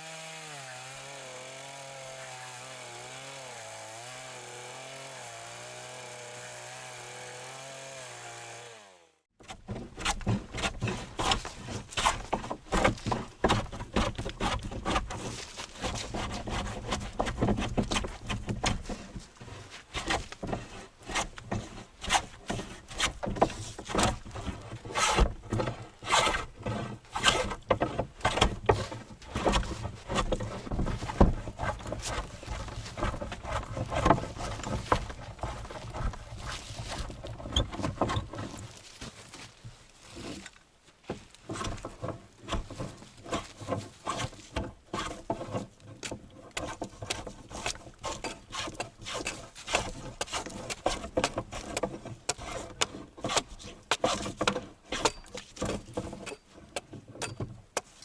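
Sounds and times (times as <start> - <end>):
hand woodworking strokes and knocks: 9.4 - 58.0.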